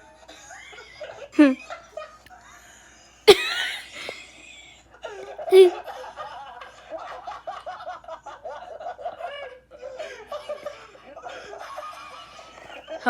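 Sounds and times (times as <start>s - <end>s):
person wheeze laughing: 3.3s - 4.7s, 5.5s - 5.9s.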